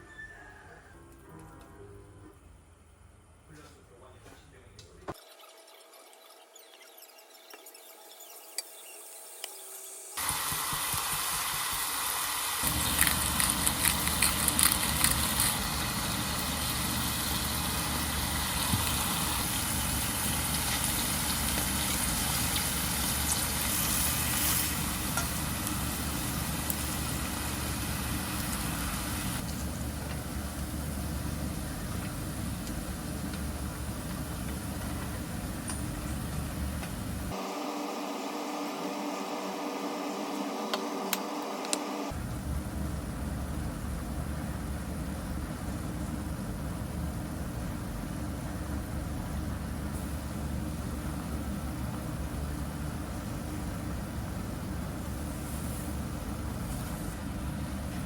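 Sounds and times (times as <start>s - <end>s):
steady machine hum: 7.8s - 58.0s
crackling: 12.6s - 15.7s.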